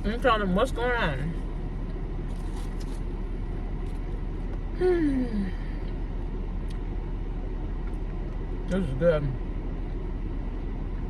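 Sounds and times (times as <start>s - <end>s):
low rumble inside car cabin: 0.0s - 11.0s
person humming mmm: 4.8s - 5.6s.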